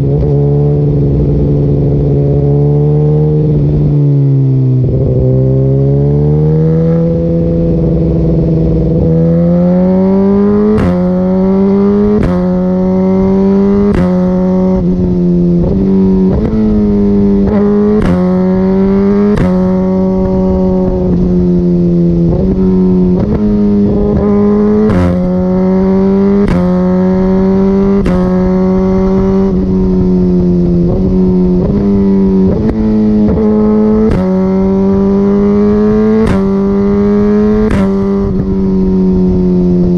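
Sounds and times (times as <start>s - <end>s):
motorcycle engine revving through gears: 0.0s - 39.9s
exhaust pop: 19.2s - 21.4s, 36.0s - 36.6s, 37.5s - 38.7s.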